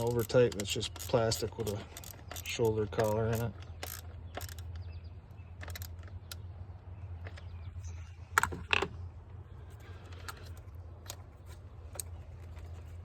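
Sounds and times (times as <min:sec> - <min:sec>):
hand tools clicking and tapping: 0:00.0 - 0:04.9.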